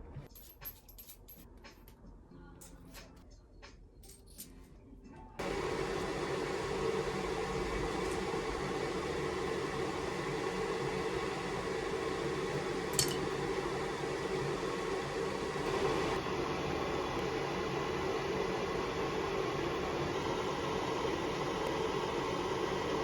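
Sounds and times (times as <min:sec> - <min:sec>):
extractor fan running: 0:05.4 - 0:23.0.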